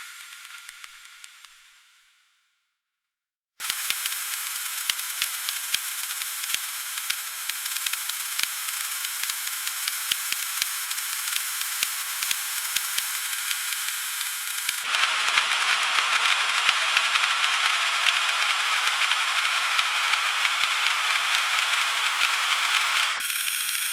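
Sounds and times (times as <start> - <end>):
freezing rain hissing: 14.5 - 23.2.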